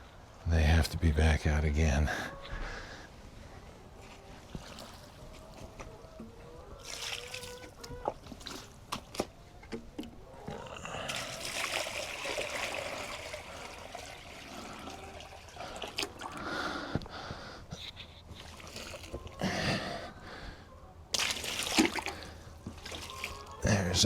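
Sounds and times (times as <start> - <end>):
water pouring into container: 11.1 - 16.4.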